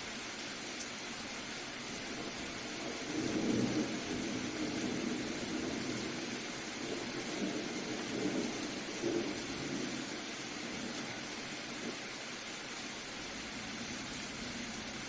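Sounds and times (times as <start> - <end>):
soft rain hiss: 0.0 - 15.0
distant thunder rumble: 1.9 - 12.0.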